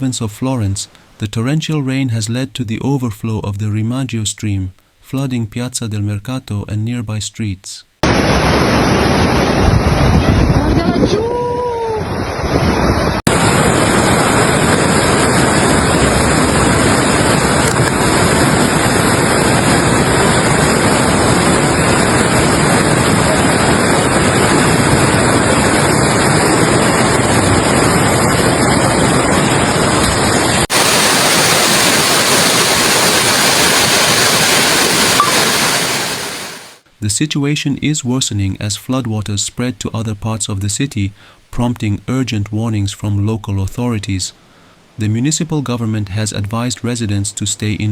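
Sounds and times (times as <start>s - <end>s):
floodwater roaring: 8.0s - 36.8s.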